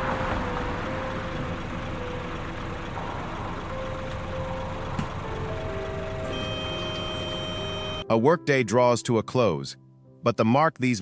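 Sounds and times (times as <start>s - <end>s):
combine harvester droning: 0.0s - 8.0s.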